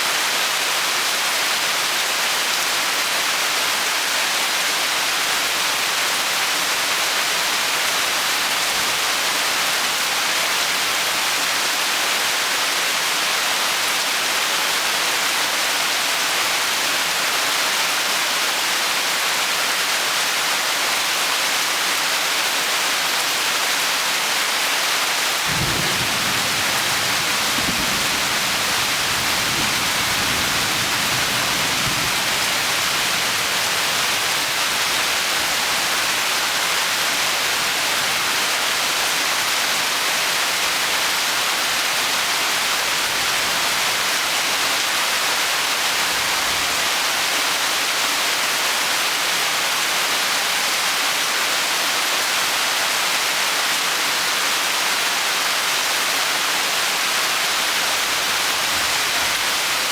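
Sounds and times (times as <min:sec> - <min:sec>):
heavy rain falling: 0:00.0 - 0:59.9
low rumble of thunder: 0:25.5 - 0:34.2.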